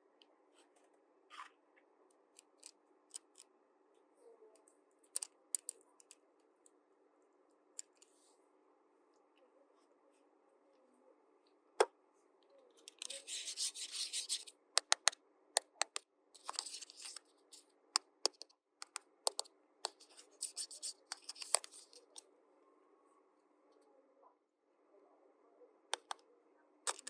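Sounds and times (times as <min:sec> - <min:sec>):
plastic parts clicking: 0:05.1 - 0:06.2.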